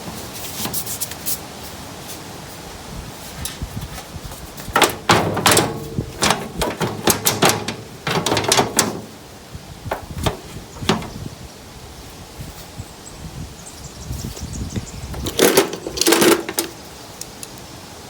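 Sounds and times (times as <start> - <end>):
sharp knocks and clanks on metal: 4.6 - 11.3, 15.2 - 16.8.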